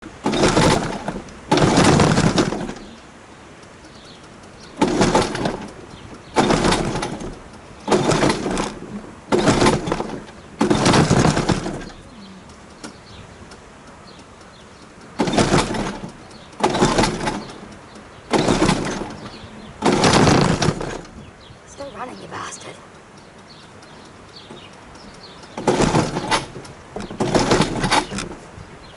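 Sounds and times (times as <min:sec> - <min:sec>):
recoil pull-starter yanked: 0:00.1 - 0:03.0, 0:03.6 - 0:21.2, 0:23.0 - 0:28.9
small engine cranking: 0:14.1 - 0:21.1, 0:24.0 - 0:28.3.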